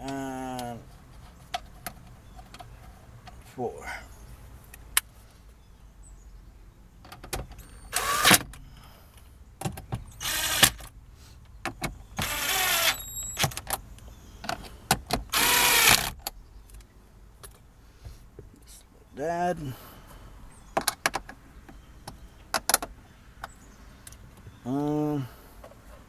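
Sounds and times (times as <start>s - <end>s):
power drill driving screws: 7.9s - 8.4s, 10.2s - 10.8s, 12.2s - 13.5s, 15.3s - 16.2s.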